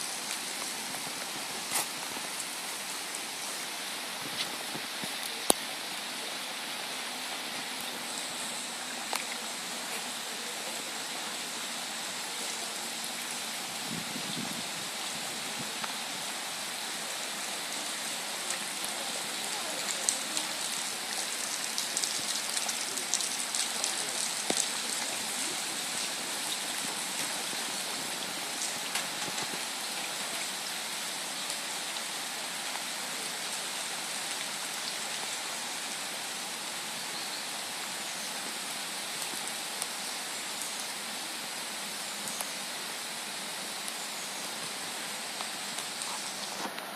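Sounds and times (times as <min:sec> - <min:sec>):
rain hiss: 0:00.0 - 0:46.9
raindrop ticks: 0:09.1 - 0:09.4, 0:18.5 - 0:27.4, 0:28.6 - 0:29.6.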